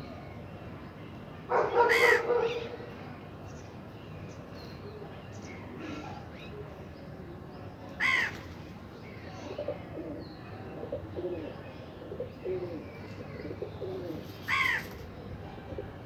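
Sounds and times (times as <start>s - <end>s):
pigeons cooing: 1.5s - 2.6s, 9.4s - 16.0s
loud short bird calls: 1.6s - 2.8s.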